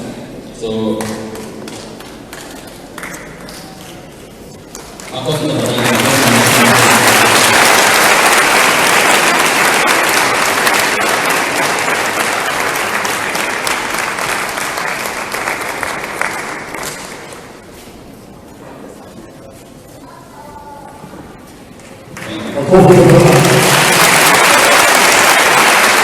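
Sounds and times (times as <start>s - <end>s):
crowd applauding: 4.7s - 17.6s, 22.1s - 26.0s.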